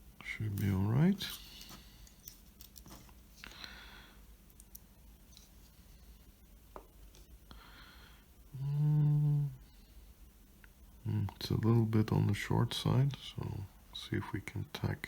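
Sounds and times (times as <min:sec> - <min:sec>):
soft breath: 0:03.4 - 0:04.3, 0:07.5 - 0:10.3
faint small clicks: 0:04.5 - 0:05.5
person humming: 0:08.5 - 0:09.6.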